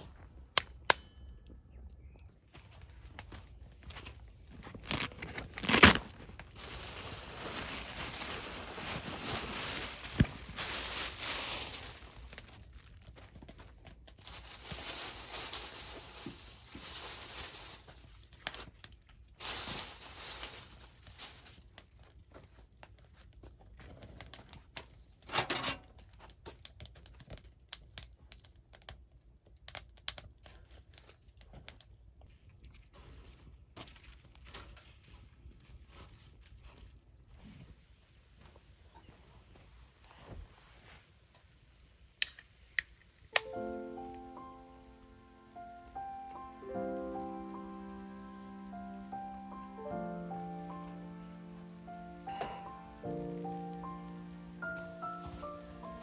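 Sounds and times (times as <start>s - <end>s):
material rustling and crinkling: 3.3s - 22.6s.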